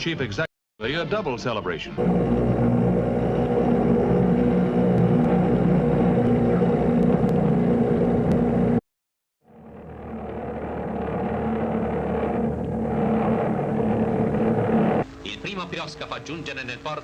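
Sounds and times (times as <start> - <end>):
ship's horn blast: 2.0 - 8.8, 9.6 - 15.2.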